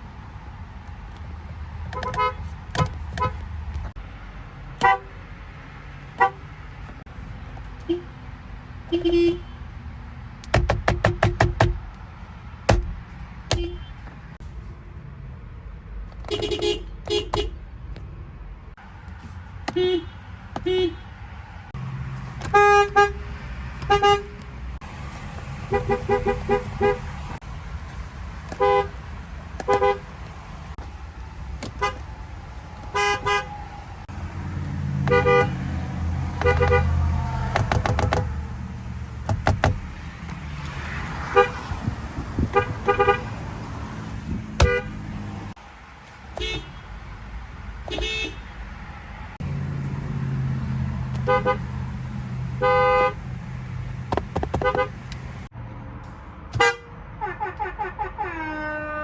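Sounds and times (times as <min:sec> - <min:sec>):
car horns beeping: 0:01.9 - 0:03.5, 0:04.8 - 0:05.2, 0:06.1 - 0:06.5, 0:07.7 - 0:08.2, 0:08.8 - 0:09.7, 0:12.7 - 0:14.2, 0:16.1 - 0:17.7, 0:19.6 - 0:21.2, 0:22.4 - 0:27.4, 0:28.5 - 0:30.7, 0:31.6 - 0:32.1, 0:32.8 - 0:34.1, 0:34.9 - 0:38.4, 0:41.2 - 0:45.5, 0:46.3 - 0:47.0, 0:47.8 - 0:48.7, 0:50.7 - 0:53.3, 0:54.1 - 0:55.2, 0:56.6 - 0:59.0.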